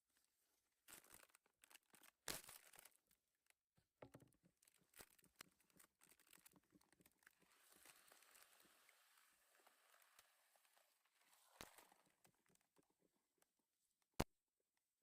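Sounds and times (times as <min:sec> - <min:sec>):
packaging crinkling and tearing: 0:00.8 - 0:03.2, 0:04.6 - 0:10.4
small clicks: 0:00.9 - 0:14.3.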